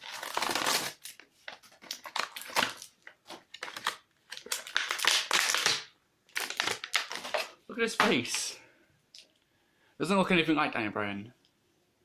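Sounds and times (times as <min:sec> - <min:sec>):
packaging crinkling: 0:00.0 - 0:08.4.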